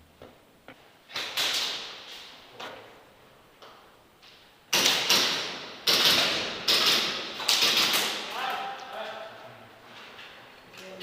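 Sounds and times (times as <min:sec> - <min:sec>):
airsoft gunfire bursts: 0:04.7 - 0:08.3.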